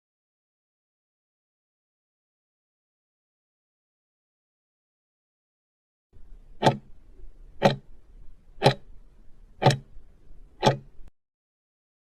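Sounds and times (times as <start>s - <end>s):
faint low hum: 6.2s - 11.1s
sharp ticks: 6.6s - 7.0s, 7.6s - 7.9s, 8.6s - 8.9s, 9.6s - 10.0s, 10.6s - 11.1s.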